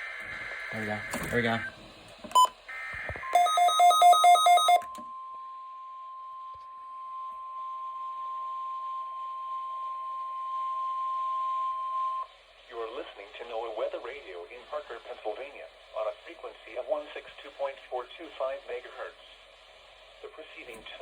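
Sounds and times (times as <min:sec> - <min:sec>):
steady warning alarm tone: 0:00.1 - 0:02.5, 0:03.2 - 0:04.9.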